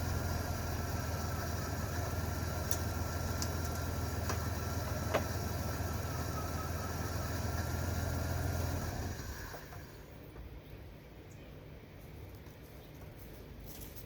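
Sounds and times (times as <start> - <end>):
car engine idling: 0.0 - 10.2.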